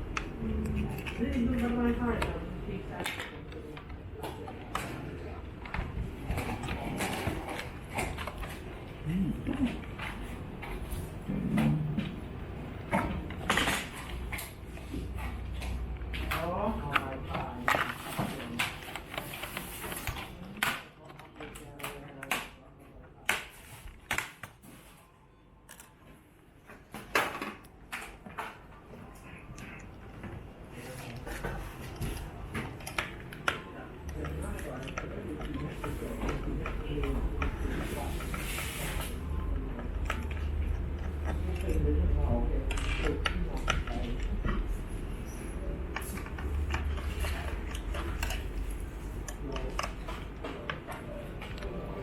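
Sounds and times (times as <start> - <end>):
plastic and metal parts clicking: 25.6 - 26.1.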